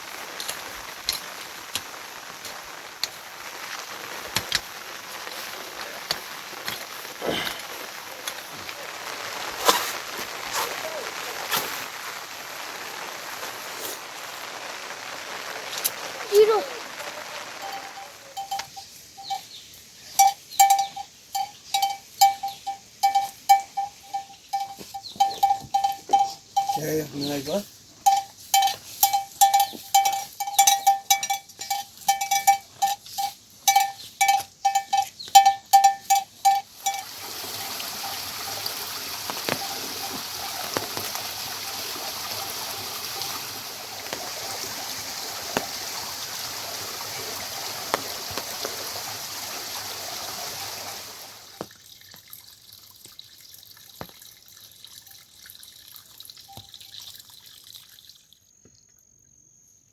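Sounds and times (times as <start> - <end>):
running water rushing: 0.0 - 58.2
faint insect chirping: 15.1 - 48.7, 51.5 - 59.9
metal animal bell clanking: 17.7 - 19.5, 20.2 - 27.2, 28.1 - 37.1.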